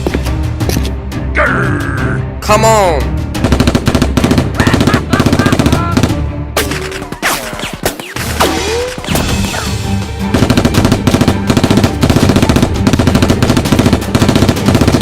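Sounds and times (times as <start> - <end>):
background music: 0.0 - 15.0
rapid automatic gunfire: 3.4 - 6.1, 10.3 - 15.0.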